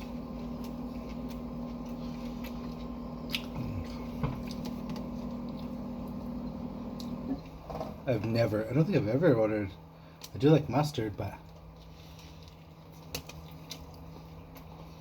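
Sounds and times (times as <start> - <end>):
person chewing: 0.0 - 7.6, 11.4 - 15.0.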